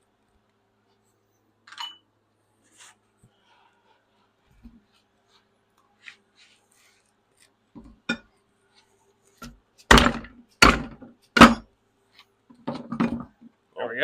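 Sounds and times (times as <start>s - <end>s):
metal tools clinking: 1.7s - 2.0s.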